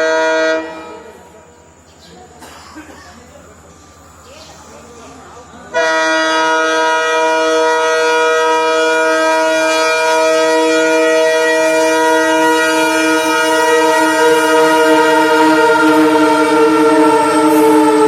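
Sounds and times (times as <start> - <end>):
locomotive horn blast: 0.0 - 1.2, 5.7 - 18.0.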